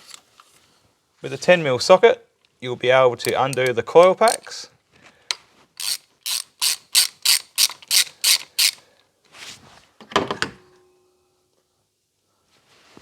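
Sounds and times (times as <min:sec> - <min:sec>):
socket ratchet clicking: 0:03.3 - 0:04.6, 0:05.8 - 0:08.8.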